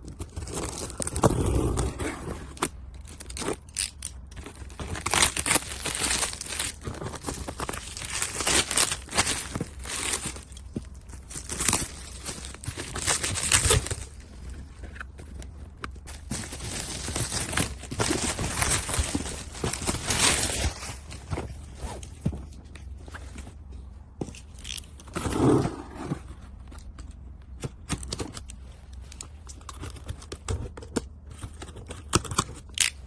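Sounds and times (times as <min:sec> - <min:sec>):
packaging crinkling and tearing: 0:00.0 - 0:21.6.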